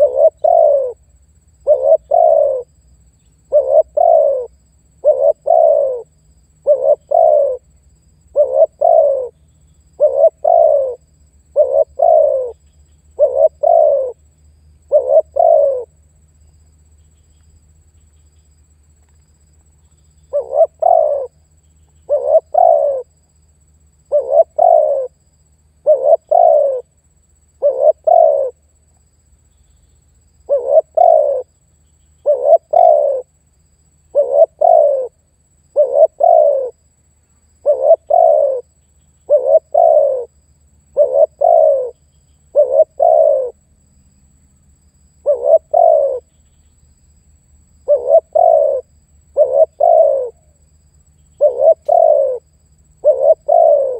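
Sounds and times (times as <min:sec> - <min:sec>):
dove cooing: 0:00.0 - 0:01.0, 0:01.6 - 0:02.8, 0:03.5 - 0:07.7, 0:08.3 - 0:09.4, 0:10.0 - 0:14.2, 0:14.8 - 0:15.9, 0:20.3 - 0:21.4, 0:22.1 - 0:23.1, 0:24.1 - 0:25.2, 0:25.8 - 0:26.9, 0:27.6 - 0:28.6, 0:30.5 - 0:31.5, 0:32.2 - 0:33.3, 0:34.1 - 0:36.8, 0:37.6 - 0:43.6, 0:45.2 - 0:46.3, 0:47.8 - 0:50.6, 0:51.4 - 0:53.9.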